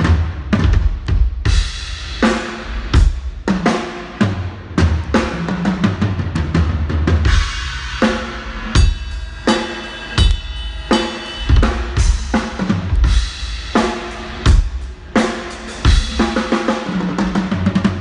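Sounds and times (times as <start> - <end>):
drum kit playing: 0.0 - 18.0
ringing cymbals: 7.5 - 17.0.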